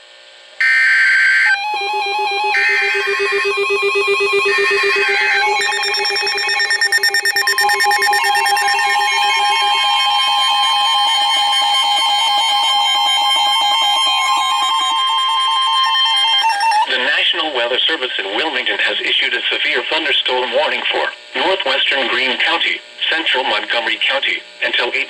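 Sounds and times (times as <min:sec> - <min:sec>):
warbling electronic alert tones: 0:00.6 - 0:16.9
steady high alert tone: 0:00.6 - 0:17.1.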